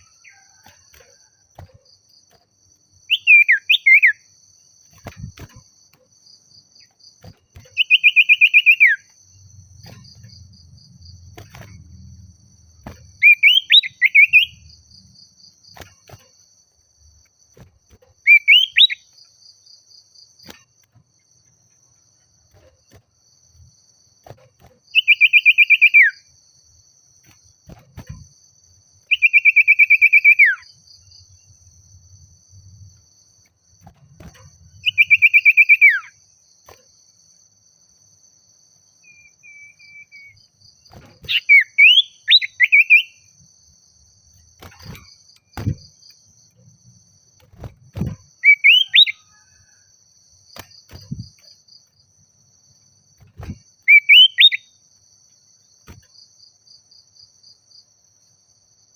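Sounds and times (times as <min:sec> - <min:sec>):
faint high insect buzz: 0:00.0 - 0:58.9
bird singing trills and whistles: 0:03.1 - 0:04.3, 0:07.2 - 0:09.1, 0:13.2 - 0:14.7, 0:18.2 - 0:19.2, 0:25.0 - 0:26.2, 0:29.1 - 0:30.7, 0:34.8 - 0:36.2, 0:39.0 - 0:40.5, 0:41.2 - 0:43.3, 0:48.0 - 0:49.5, 0:53.4 - 0:54.7.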